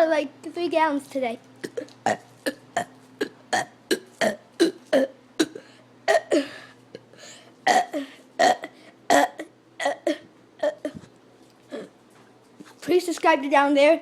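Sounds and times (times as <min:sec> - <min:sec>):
man burping: 0:01.6 - 0:07.1, 0:07.7 - 0:11.0.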